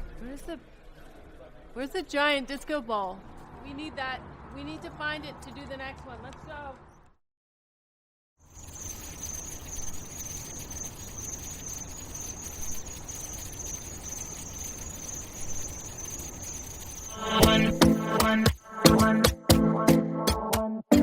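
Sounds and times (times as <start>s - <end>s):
high-pitched whine: 8.5s - 18.7s.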